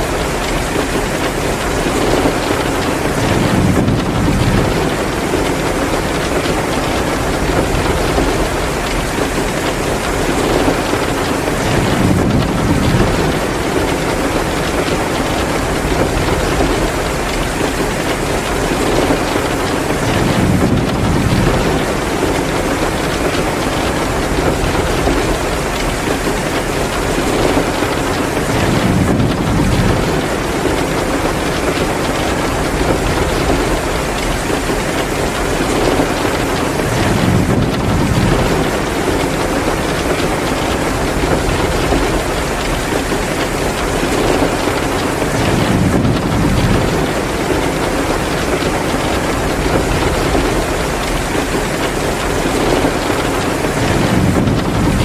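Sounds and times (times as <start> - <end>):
heavy rain pouring: 0.0 - 55.0.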